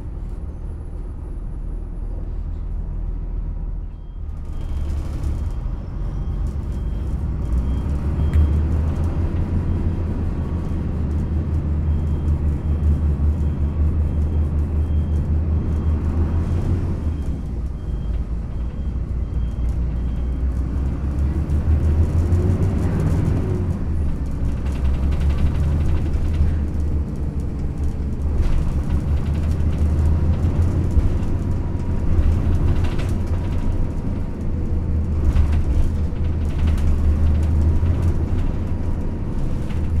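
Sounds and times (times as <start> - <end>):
bus engine rumbling: 0.0 - 40.0
road noise: 0.0 - 40.0
bus body resonating: 20.8 - 40.0.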